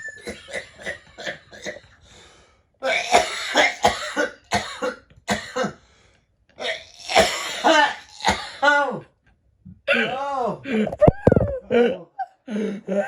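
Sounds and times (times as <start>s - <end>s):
man coughing: 2.8s - 5.8s, 6.6s - 8.9s.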